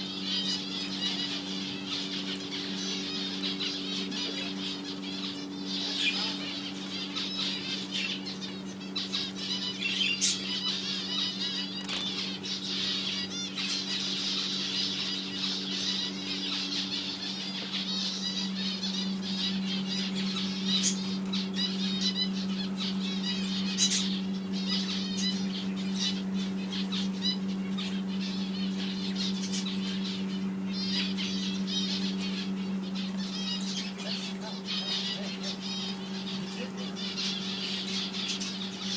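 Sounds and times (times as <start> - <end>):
birds chirping and calling: 0.0 - 38.9
steady low hum: 0.0 - 38.9.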